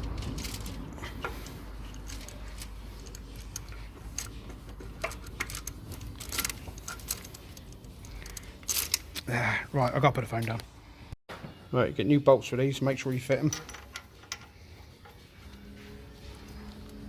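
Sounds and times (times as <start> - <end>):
metal parts and tools clinking: 0.0 - 9.3, 13.3 - 15.6.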